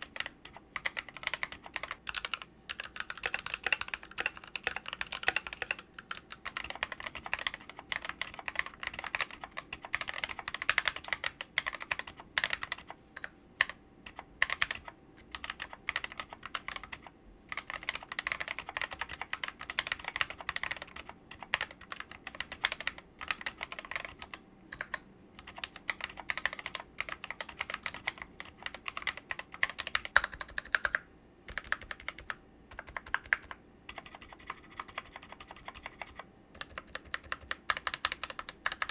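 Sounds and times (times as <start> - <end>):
mechanical keyboard key clicks: 13.6 - 38.9.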